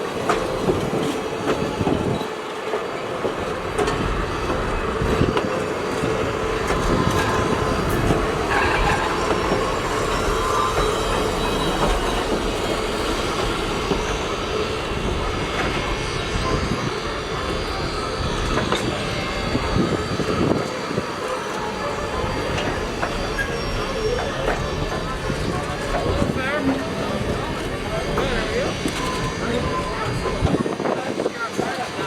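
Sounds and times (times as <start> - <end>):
train rolling along track: 0.0 - 32.0
wheel squeal: 6.6 - 31.9.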